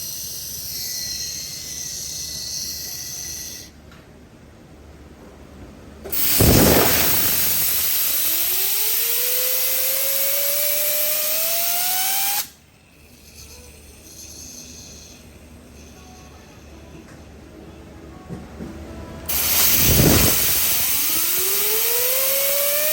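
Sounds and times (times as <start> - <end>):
power tool whining as it spins up: 6.2 - 12.6, 19.3 - 22.9.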